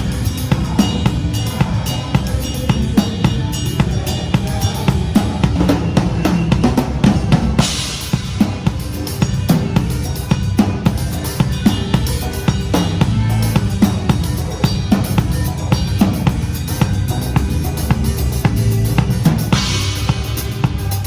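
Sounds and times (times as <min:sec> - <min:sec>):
cymbal crash: 0:00.0 - 0:16.9, 0:17.8 - 0:21.0
drum kit playing a groove: 0:00.0 - 0:21.0.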